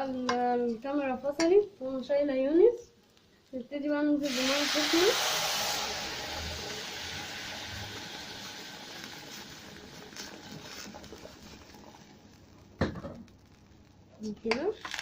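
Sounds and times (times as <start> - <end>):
water sizzling in hot pot: 0.0 - 15.0
water pouring: 4.2 - 12.5.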